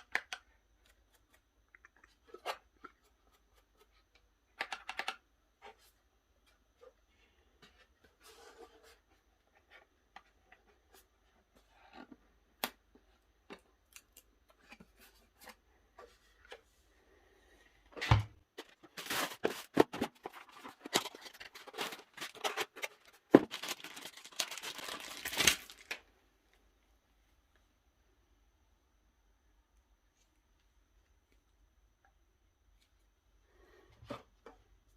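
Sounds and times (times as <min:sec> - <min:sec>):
packaging being torn and rustled: 0:18.8 - 0:26.0.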